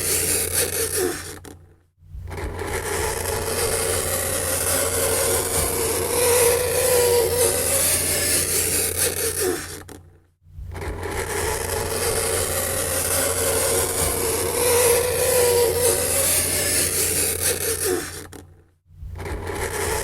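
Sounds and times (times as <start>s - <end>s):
fingernails scraping a chalkboard: 10.8s - 18.4s.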